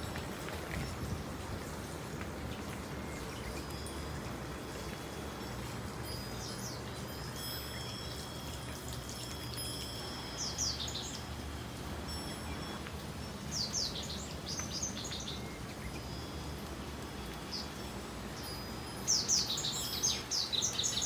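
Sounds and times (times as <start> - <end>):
faint high ringing tones: 0.4 - 21.0
small birds chirping: 10.2 - 21.0.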